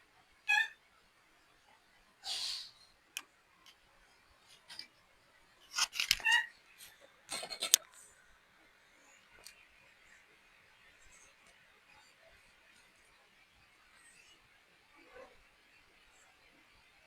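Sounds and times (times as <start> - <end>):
baby monkey squeaking: 0.5 - 0.8, 6.2 - 6.5
breathy hiss: 2.2 - 2.9.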